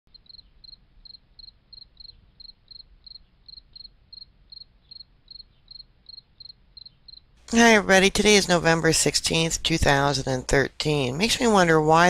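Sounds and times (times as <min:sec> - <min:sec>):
cricket chirping: 0:00.1 - 0:07.4.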